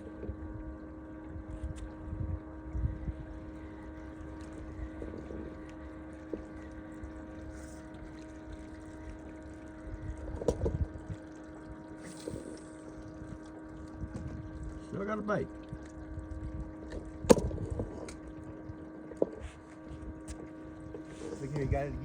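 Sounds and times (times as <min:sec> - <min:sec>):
boat motor humming: 0:00.0 - 0:22.0
wind buffeting microphone: 0:01.3 - 0:05.7, 0:09.7 - 0:11.3, 0:13.0 - 0:15.0, 0:15.6 - 0:18.8, 0:21.2 - 0:22.0.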